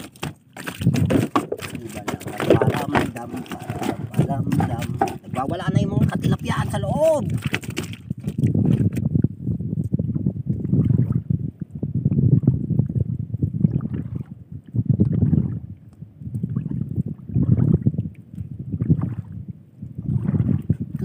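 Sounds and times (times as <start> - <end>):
fish thrashing in net: 0.0 - 5.5, 7.1 - 9.0
water splashing and sloshing: 0.0 - 21.0.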